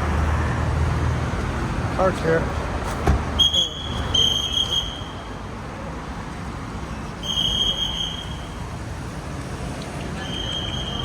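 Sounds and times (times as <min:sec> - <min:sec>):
low traffic rumble: 0:00.0 - 0:11.0.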